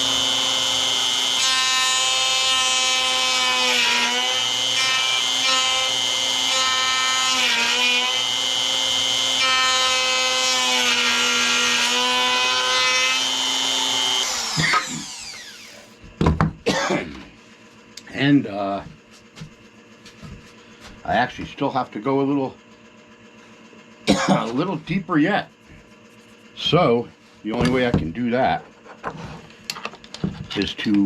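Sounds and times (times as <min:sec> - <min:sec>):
router whining cutting wood: 0:00.0 - 0:16.0.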